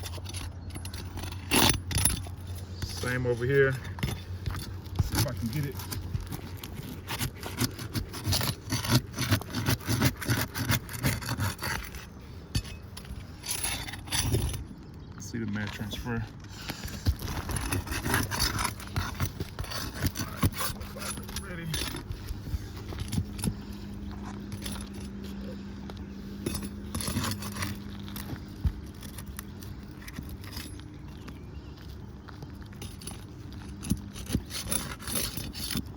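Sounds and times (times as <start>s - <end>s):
tool scraping under shingles: 0.0s - 35.9s
shingles tearing: 3.5s - 14.8s, 16.5s - 31.2s, 32.4s - 35.9s
flat bar scraping and clicking: 4.1s - 14.6s.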